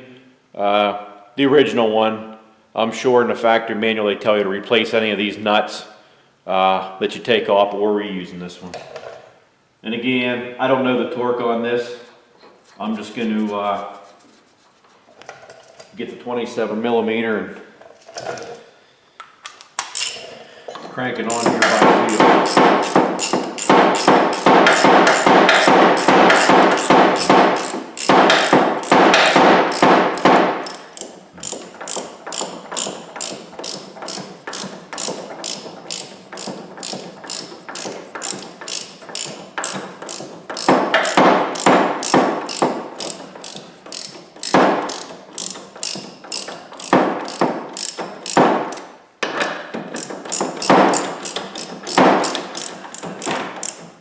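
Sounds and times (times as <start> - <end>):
hand ratchet clicking: 19.8 - 20.3, 21.3 - 54.0.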